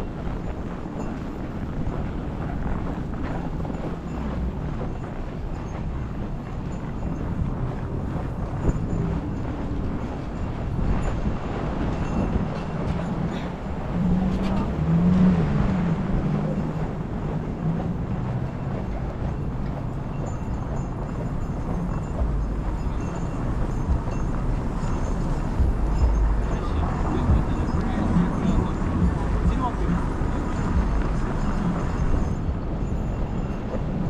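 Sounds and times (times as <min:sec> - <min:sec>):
city traffic rumble: 0:00.0 - 0:34.0
pitched engine hum: 0:00.0 - 0:34.0.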